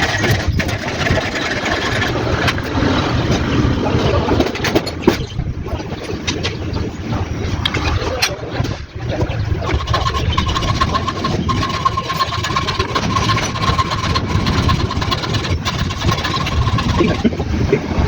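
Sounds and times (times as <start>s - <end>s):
engine running: 9.6s - 17.3s.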